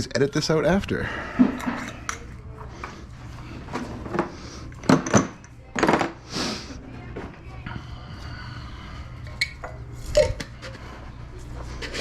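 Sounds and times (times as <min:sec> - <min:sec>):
utensils and dishes clattering: 0:01.3 - 0:02.3, 0:03.6 - 0:06.2, 0:09.2 - 0:10.9.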